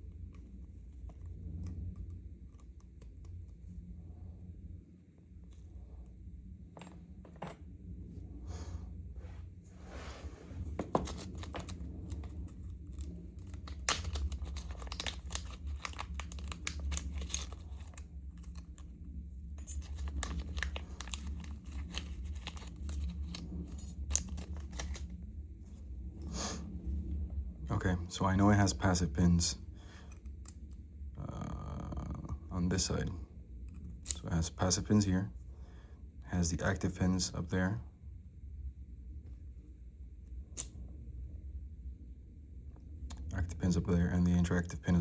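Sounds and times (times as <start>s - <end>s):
steady low hum: 0.0s - 45.0s
lock parts clicking and scraping: 10.8s - 25.2s.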